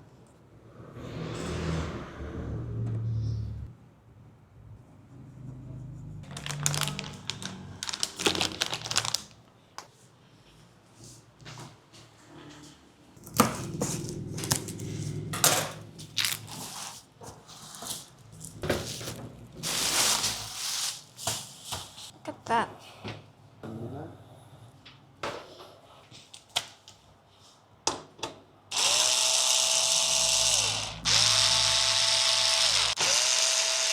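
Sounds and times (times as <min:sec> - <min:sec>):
packaging crinkling and rustling: 0:06.2 - 0:09.6, 0:16.0 - 0:22.0.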